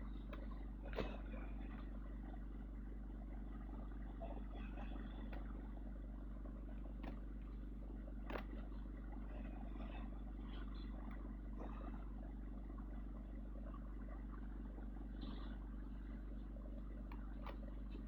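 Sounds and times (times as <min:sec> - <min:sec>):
faint clicks: 0:04.2 - 0:09.9, 0:16.8 - 0:18.0.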